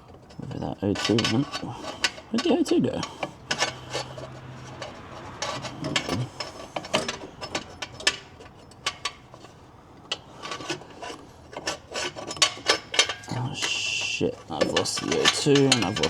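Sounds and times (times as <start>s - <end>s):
hand tools clicking and scraping: 0.0s - 16.0s.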